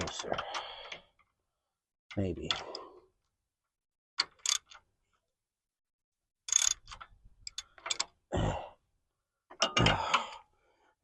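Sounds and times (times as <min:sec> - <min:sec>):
wrench clicking against metal: 0:06.5 - 0:08.1.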